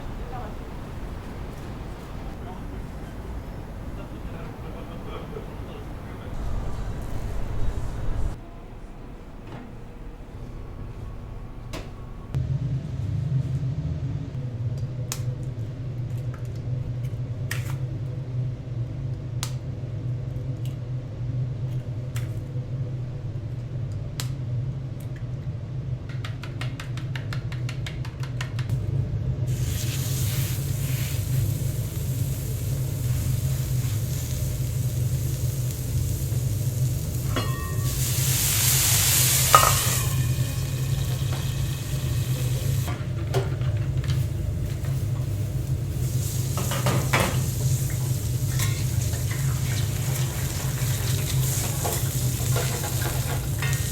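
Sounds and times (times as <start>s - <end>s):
steady low hum: 0.0s - 26.1s, 28.7s - 53.9s
food sizzling on a griddle: 29.5s - 42.9s, 44.8s - 53.9s
cooking utensils clicking: 46.6s - 53.9s.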